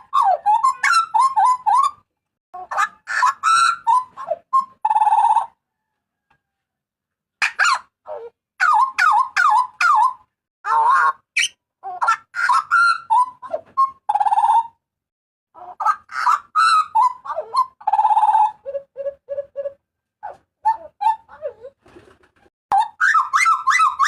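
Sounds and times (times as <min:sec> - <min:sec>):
butcherbird calling: 0:00.0 - 0:02.0, 0:22.7 - 0:24.0.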